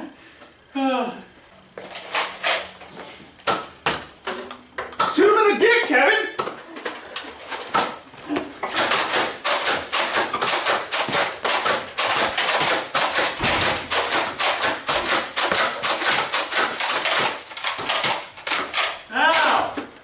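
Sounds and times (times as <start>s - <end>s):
toy blaster firing rapid clacks: 8.8s - 19.0s.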